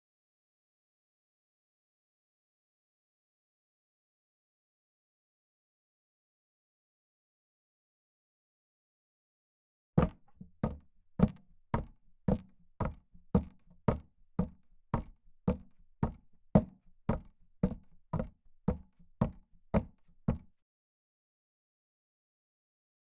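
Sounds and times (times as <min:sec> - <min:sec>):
sharp knocks: 0:10.0 - 0:12.4.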